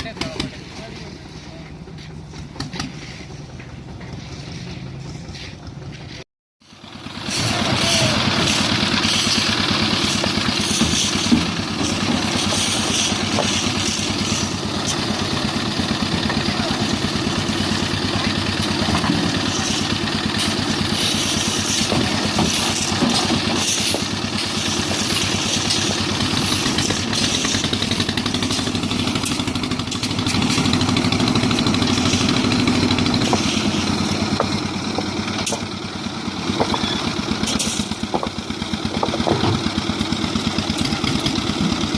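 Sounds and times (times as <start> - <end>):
concrete mixer engine running: 0.0 - 41.9.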